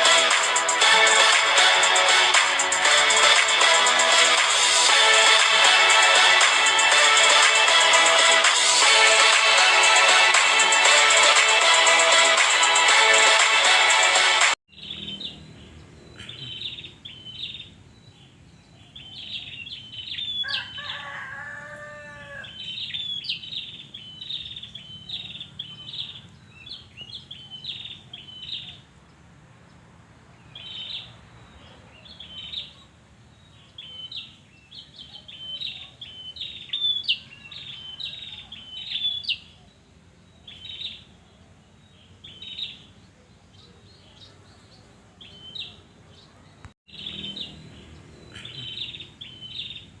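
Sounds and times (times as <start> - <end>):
lower multi-tone bird call: 14.7 - 28.9, 30.5 - 50.0
bird chirping song: 14.7 - 50.0.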